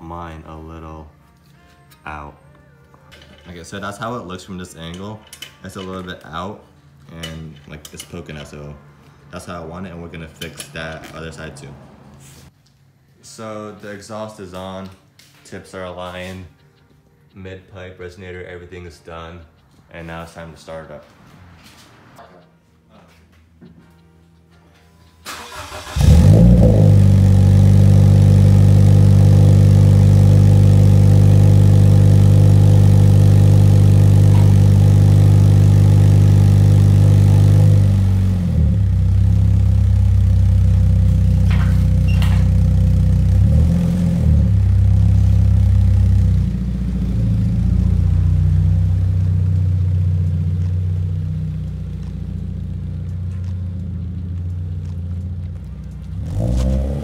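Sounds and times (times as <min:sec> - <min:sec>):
car engine starting and idling: 0:25.2 - 0:57.0.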